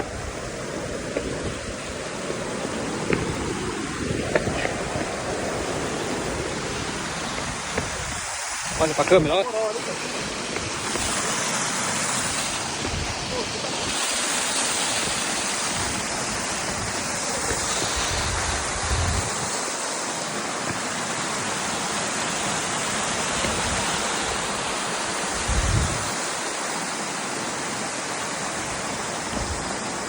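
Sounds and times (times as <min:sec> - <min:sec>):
wind buffeting microphone: 0:00.0 - 0:11.4, 0:12.0 - 0:19.7, 0:25.3 - 0:26.3, 0:29.3 - 0:29.8
waterfall rushing: 0:00.0 - 0:30.0.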